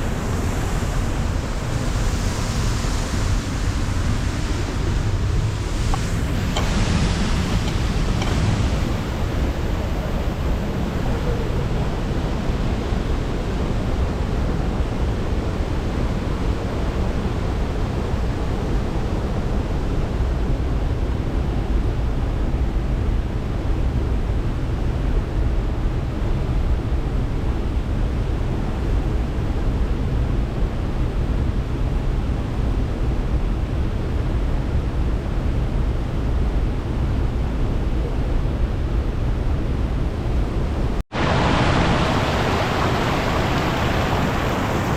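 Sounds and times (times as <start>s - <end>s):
waterfall and river roaring: 0.0s - 44.9s.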